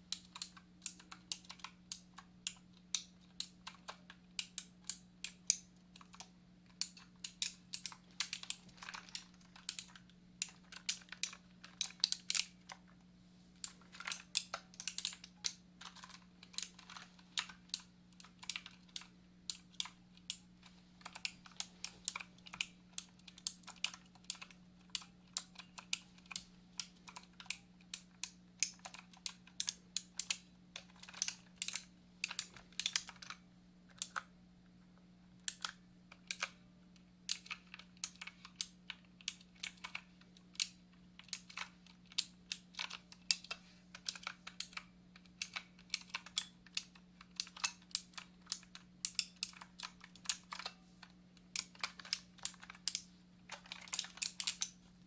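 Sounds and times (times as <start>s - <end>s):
faint low hum: 0.0s - 55.0s
keyboard typing: 13.6s - 34.2s.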